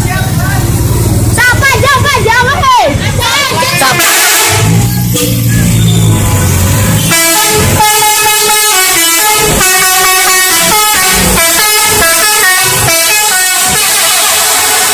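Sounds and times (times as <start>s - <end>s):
musical bus air horn melody: 3.4s - 14.9s.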